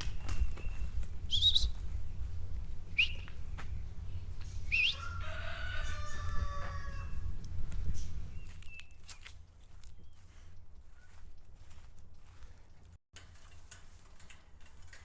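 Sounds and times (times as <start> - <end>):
steady low rumble: 0.0 - 4.8, 7.1 - 8.5
high rising bird chirps: 0.4 - 2.2, 2.9 - 5.0
rooster crowing: 4.9 - 7.4.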